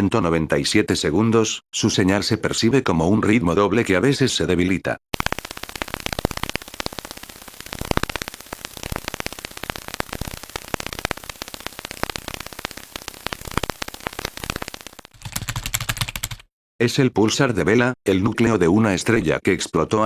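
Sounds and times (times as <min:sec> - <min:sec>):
static hiss: 0:05.2 - 0:15.1.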